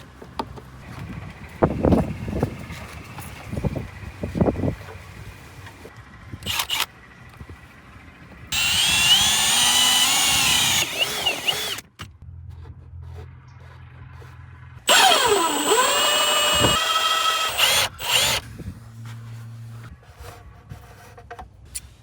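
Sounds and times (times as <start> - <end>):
power tool whining: 8.5 - 11.9, 14.9 - 18.4.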